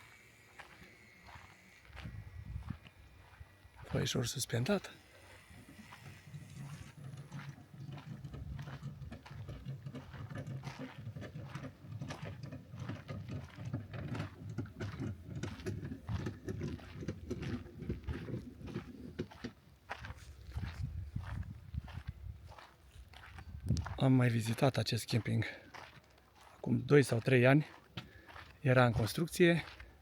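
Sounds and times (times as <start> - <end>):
footsteps on wooden boards: 5.4 - 24.0, 25.0 - 30.0.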